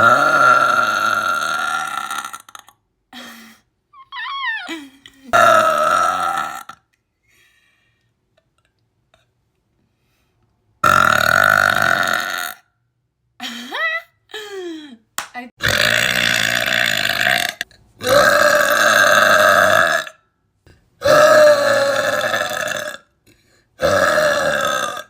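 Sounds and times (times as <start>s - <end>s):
woman burping loudly: 0.0s - 2.8s, 4.0s - 6.9s, 10.8s - 12.6s, 15.6s - 20.2s, 21.0s - 23.1s, 23.8s - 25.0s
short falling vocal sound: 4.0s - 5.1s.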